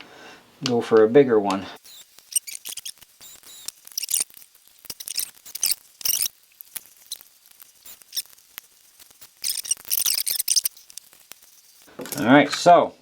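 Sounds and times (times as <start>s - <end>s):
high-pitched scrapes and squeaks: 1.8s - 11.9s.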